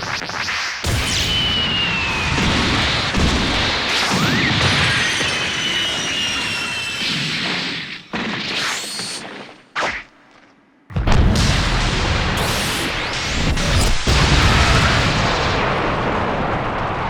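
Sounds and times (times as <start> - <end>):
impacts crashes and booms: 0.2 - 9.2, 10.9 - 17.0
thin high whistling tones: 4.8 - 7.5.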